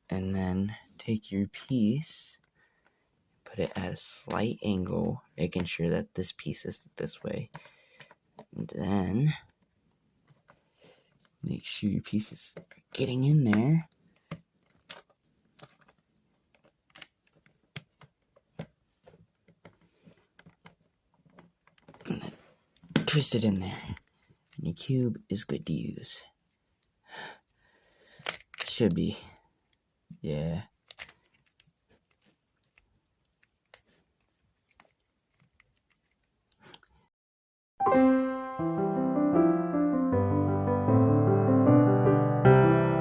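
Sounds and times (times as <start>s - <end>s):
plastic puzzle cube clicking: 13.5s - 18.7s, 28.1s - 28.9s, 30.8s - 36.9s.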